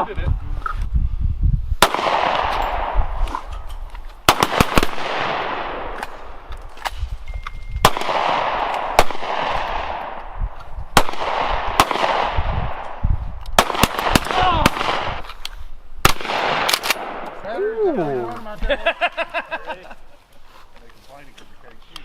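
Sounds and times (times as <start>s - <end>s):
gunshots with long echo: 1.8s - 3.2s, 4.2s - 6.5s, 7.8s - 15.2s, 16.0s - 17.4s.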